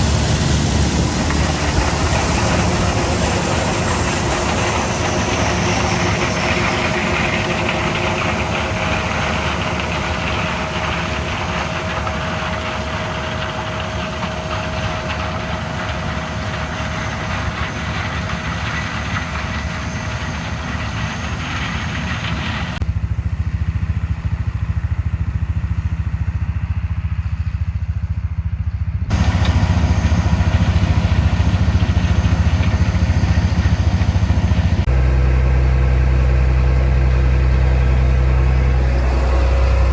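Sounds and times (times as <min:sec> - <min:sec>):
deeper engine: 0:00.0 - 0:39.9
diesel machinery running: 0:00.0 - 0:39.9.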